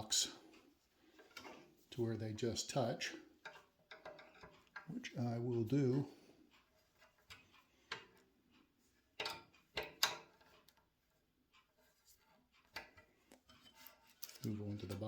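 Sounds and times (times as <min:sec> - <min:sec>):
light clicks and knocks of tools: 0:00.0 - 0:15.0.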